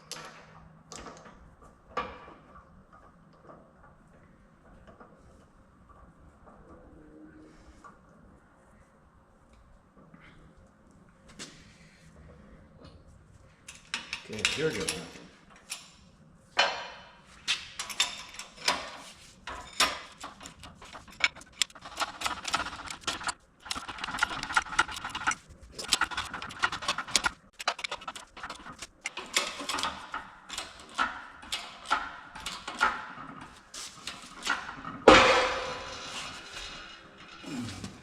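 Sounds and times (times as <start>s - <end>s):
metallic clicks and ticks: 20.0s - 32.9s.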